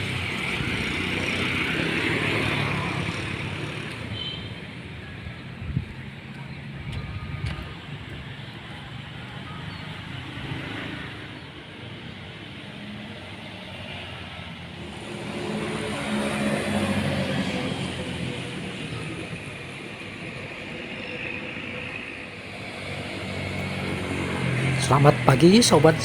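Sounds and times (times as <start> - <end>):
road traffic noise: 0.0 - 26.0
bus engine running: 22.7 - 26.0.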